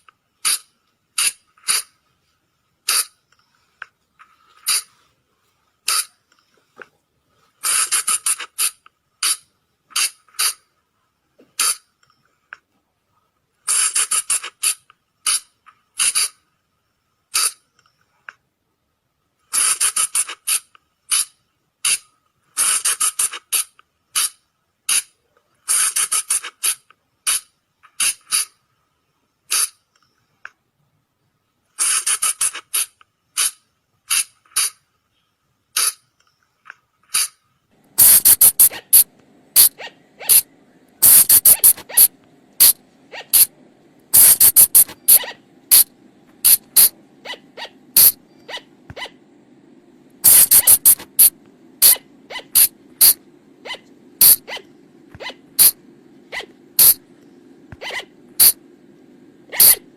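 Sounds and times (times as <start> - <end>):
low steady hum: 37.5 - 59.9
flying lemur calling: 38.0 - 43.5, 44.2 - 45.8, 46.4 - 49.2, 50.3 - 57.0, 57.8 - 58.6, 59.5 - 59.8.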